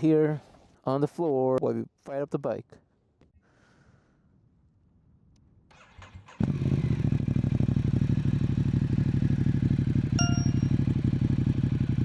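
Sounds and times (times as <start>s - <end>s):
motorcycle starter cranking: 5.7s - 6.4s
motorcycle engine idling: 6.3s - 12.0s
short beep: 10.2s - 10.8s.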